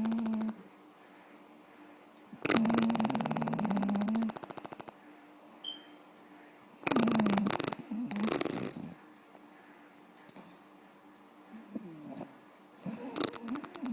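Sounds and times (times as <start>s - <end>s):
woman snoring with a rattle: 0.0s - 0.7s, 2.4s - 5.0s, 6.8s - 9.1s, 11.7s - 13.9s.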